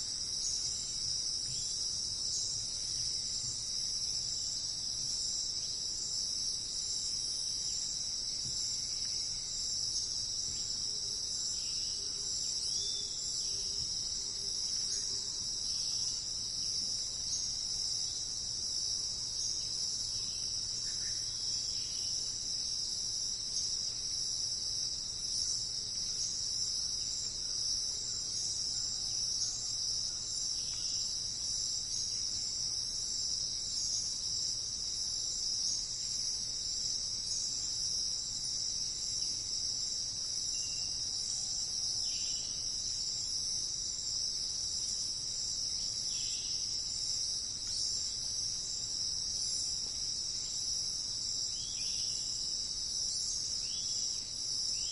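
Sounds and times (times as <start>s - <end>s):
insect chorus trilling: 0.0s - 54.9s
faint bird chirps: 11.6s - 13.9s.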